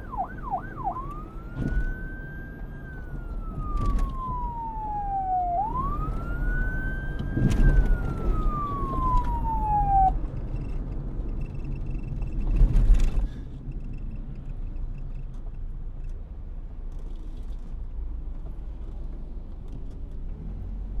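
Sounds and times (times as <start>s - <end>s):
police siren wailing: 0.0s - 10.2s
low traffic rumble: 0.0s - 21.0s.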